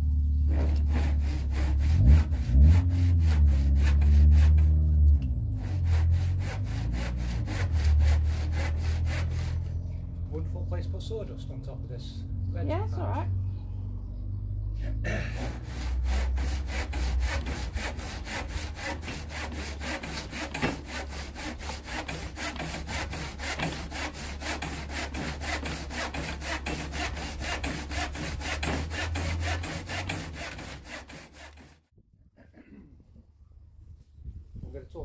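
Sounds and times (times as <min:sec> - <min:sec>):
hand saw cutting wood: 0:00.4 - 0:09.7, 0:15.1 - 0:31.9.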